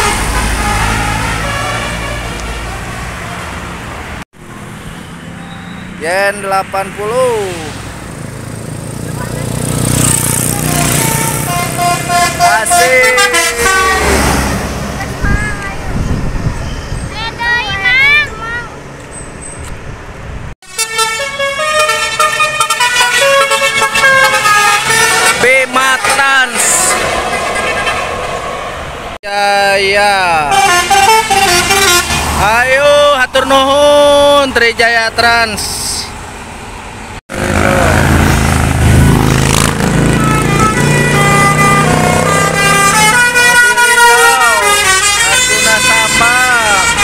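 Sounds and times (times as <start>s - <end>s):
multi-tone bus horn tune: 0.0s - 3.0s, 10.5s - 15.6s, 20.6s - 28.4s, 30.4s - 32.4s, 39.7s - 47.0s
diesel engine: 0.0s - 47.0s
road noise: 0.0s - 47.0s.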